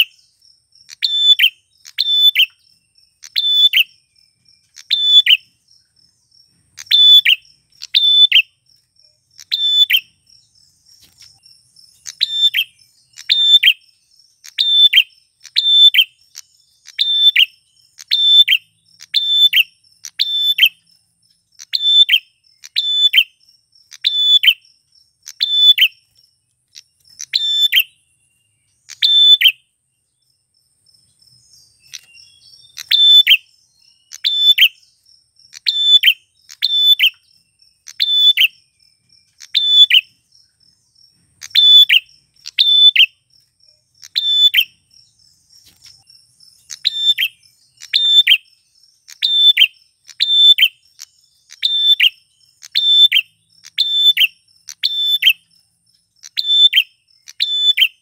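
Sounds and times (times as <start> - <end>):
bird giving sharp calls: 9.4 - 10.1.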